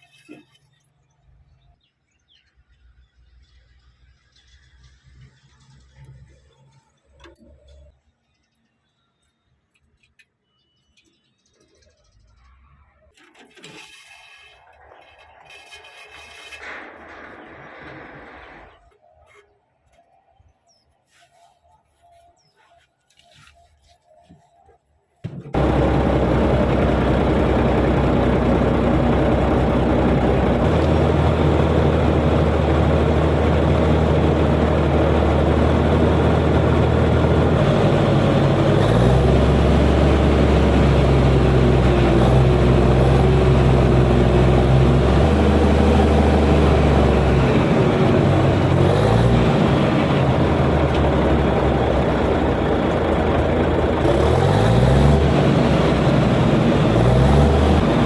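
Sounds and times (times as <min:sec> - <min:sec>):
bulldozer diesel engine running: 0:25.3 - 0:58.0.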